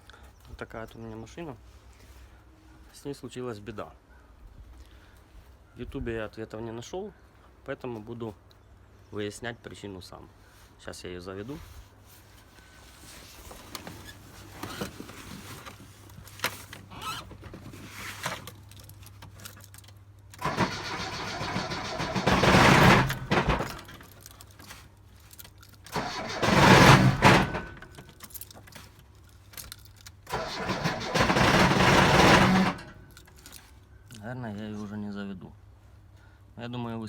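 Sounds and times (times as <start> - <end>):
keys jangling: 18.5 - 20.0, 27.8 - 30.3
car starter cranking engine: 20.3 - 24.2, 25.9 - 28.2, 30.3 - 33.6
engine knocking: 20.4 - 23.9, 30.3 - 32.9.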